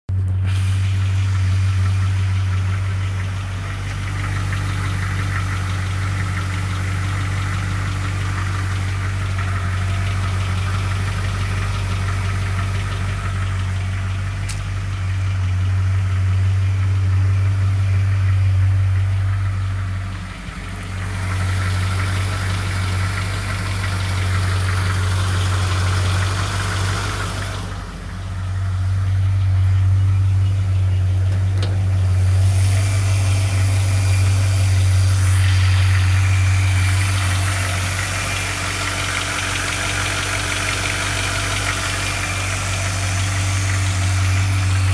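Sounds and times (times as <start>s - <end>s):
strange engine noise: 0.0s - 44.9s
car engine idling: 0.1s - 44.9s.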